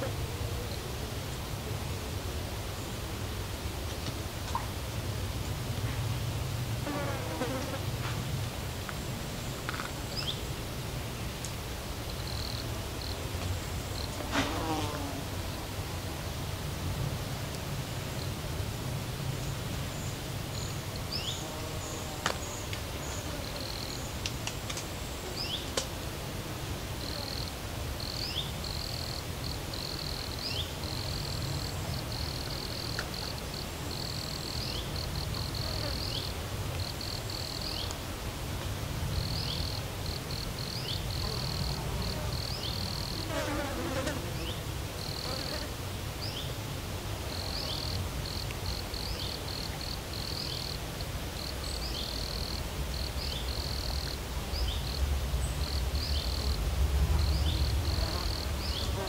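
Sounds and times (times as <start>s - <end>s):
insects chirping in pulsed runs: 51.4s - 59.0s.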